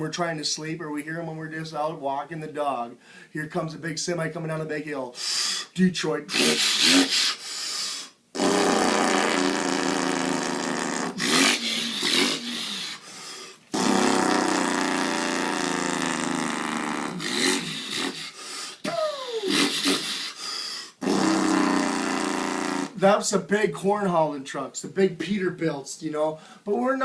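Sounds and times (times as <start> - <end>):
man imitating diesel engine drone: 8.4 - 13.1, 13.7 - 20.2, 21.0 - 23.0.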